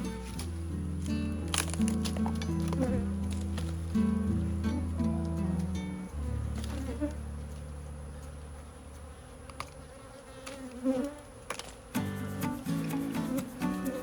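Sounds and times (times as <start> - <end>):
honeybees buzzing: 0.0 - 14.0.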